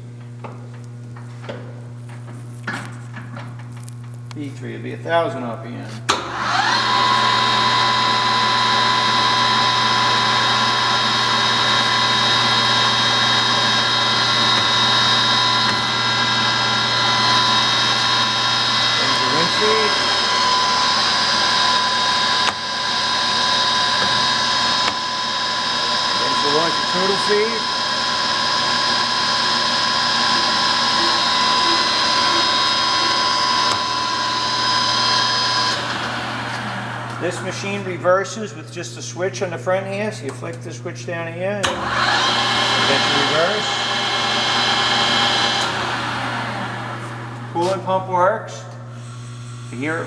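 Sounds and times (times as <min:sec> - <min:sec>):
lathe gearbox and motor whine: 0:06.1 - 0:38.1, 0:41.6 - 0:47.8.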